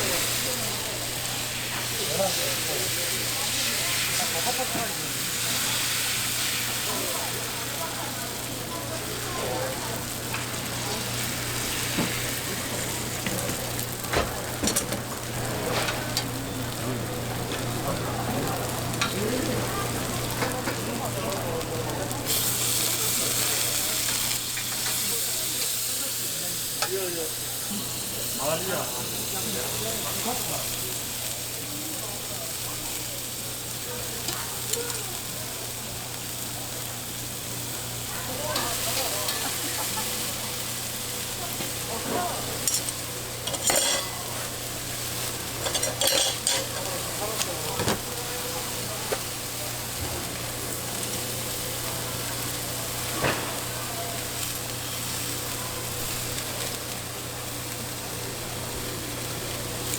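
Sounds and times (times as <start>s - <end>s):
batter sizzling in a pan: 0.0s - 59.9s.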